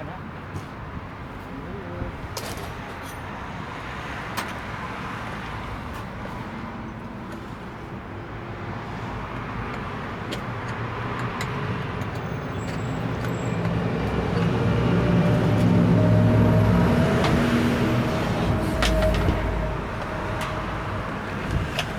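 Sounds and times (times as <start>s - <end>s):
engine running steadily: 13.2s - 21.9s.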